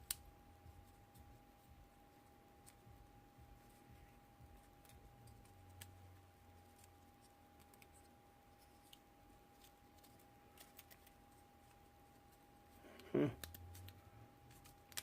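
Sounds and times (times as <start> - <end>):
small plastic parts clicking: 13.4 - 15.0.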